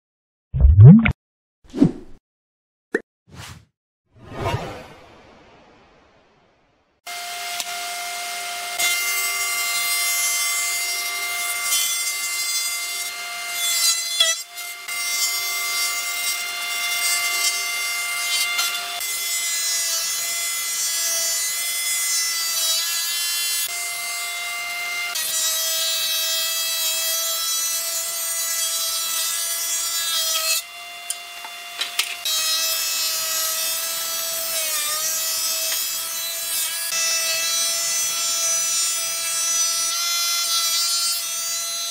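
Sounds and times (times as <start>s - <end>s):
power tool whining on wood: 7.1s - 41.9s.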